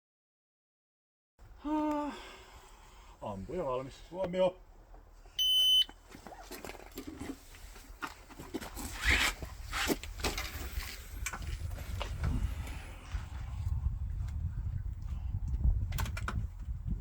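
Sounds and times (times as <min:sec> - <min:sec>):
shot timer beep: 0:05.4 - 0:06.0.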